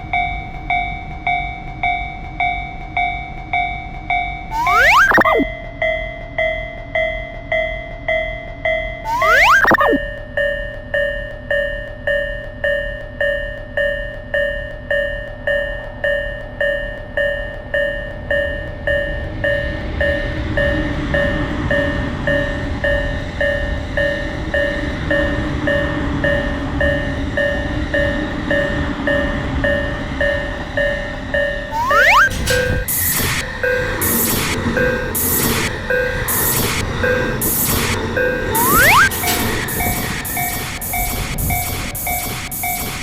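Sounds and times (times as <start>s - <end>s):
level crossing alarm bell: 4.5s - 5.5s, 9.1s - 10.0s, 30.9s - 43.0s
rising whistle-like glide: 4.5s - 5.5s, 9.1s - 10.0s, 31.7s - 42.7s.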